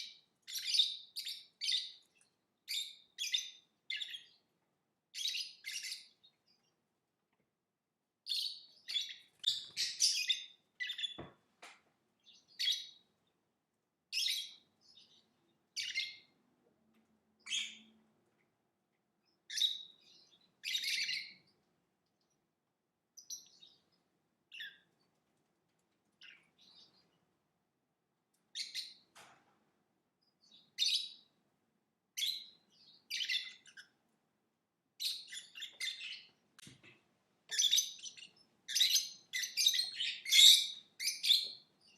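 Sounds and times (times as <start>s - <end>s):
lovebird chirping: 0.0s - 4.4s, 5.1s - 6.8s, 8.2s - 11.4s, 12.2s - 13.1s, 14.1s - 16.4s, 17.4s - 18.0s, 19.2s - 21.6s, 23.2s - 24.9s, 26.2s - 27.1s, 28.5s - 29.1s, 30.3s - 31.3s, 32.2s - 34.0s, 35.0s - 36.4s, 37.5s - 41.9s.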